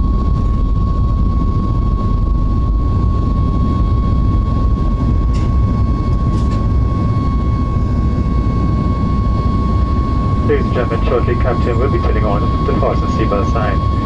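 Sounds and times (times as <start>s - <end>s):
jet engine roar in cabin: 0.0s - 14.0s
thin steady whine: 0.0s - 14.0s.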